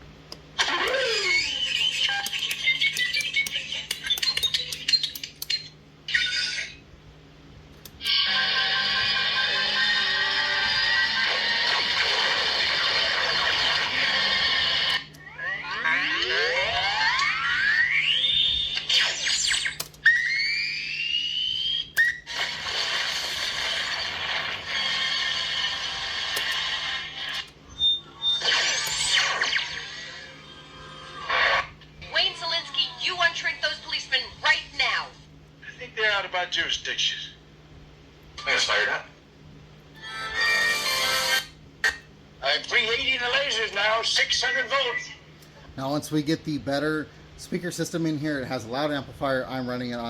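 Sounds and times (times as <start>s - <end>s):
low electronic hum: 0.0s - 50.0s
rising power-up whine: 8.2s - 24.2s, 27.7s - 31.6s
steady electronic drone: 9.4s - 19.7s.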